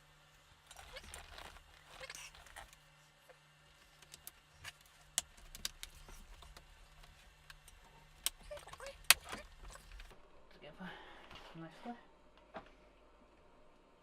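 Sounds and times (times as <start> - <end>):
plastic snapping together: 4.0 - 6.7.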